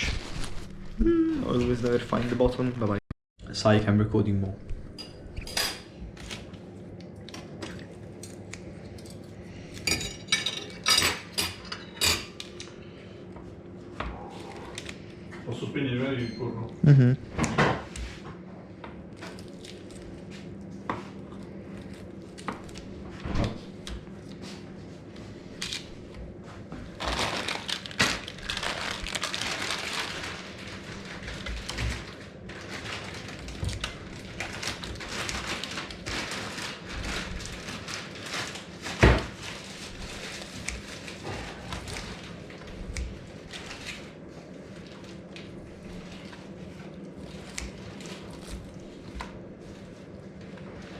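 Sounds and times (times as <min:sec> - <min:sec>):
crinkling and crackling: 0:00.0 - 0:02.8, 0:25.5 - 0:50.9.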